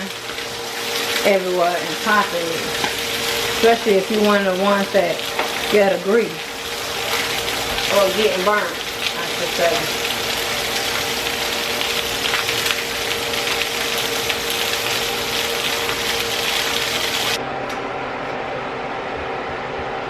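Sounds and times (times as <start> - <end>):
chicken sizzling in oil: 0.0 - 17.4.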